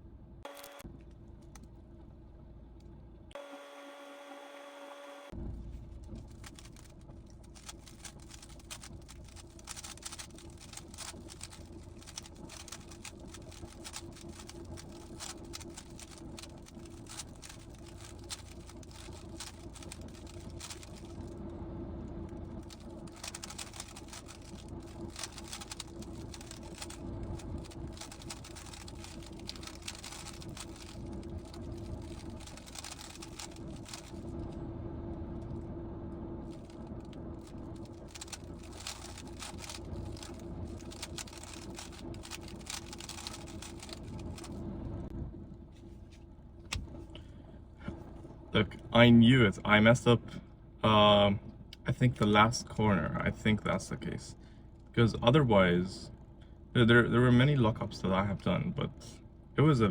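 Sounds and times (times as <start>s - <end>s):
steady low hum: 0.0s - 59.9s
puzzle cube plastic clicks: 6.3s - 21.2s, 22.7s - 34.2s, 38.0s - 44.5s.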